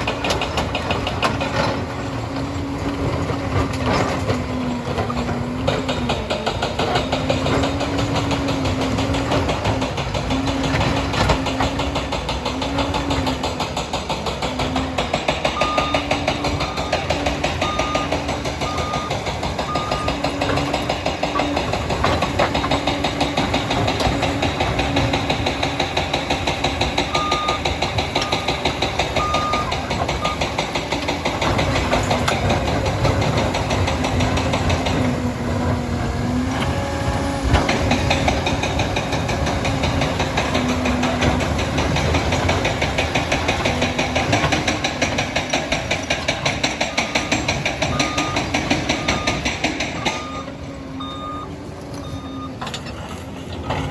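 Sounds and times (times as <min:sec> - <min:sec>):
diesel engine rattling under load: 0:00.0 - 0:53.9
reversing alarm beeping: 0:14.9 - 0:22.9, 0:26.9 - 0:30.6, 0:46.7 - 0:53.8.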